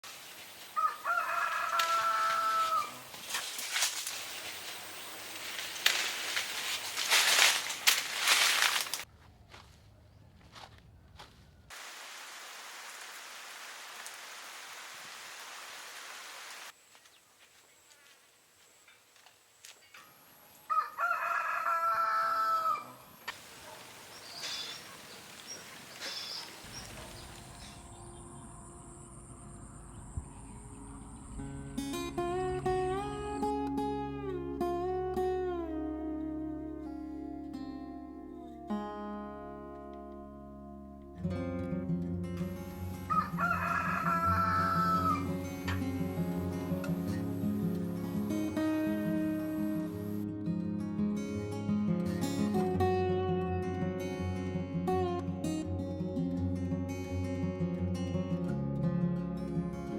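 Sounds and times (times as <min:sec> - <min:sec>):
rooster crowing: 0:00.8 - 0:03.1, 0:20.5 - 0:23.0, 0:43.0 - 0:45.4
rustling and scuffing: 0:01.8 - 0:11.7
faint high bird chirps: 0:24.1 - 0:31.9.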